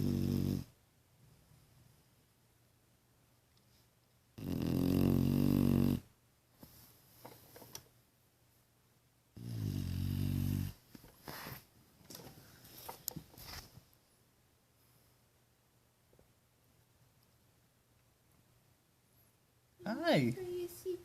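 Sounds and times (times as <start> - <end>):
dog snoring: 0.0 - 0.8, 4.4 - 6.1, 9.4 - 10.8.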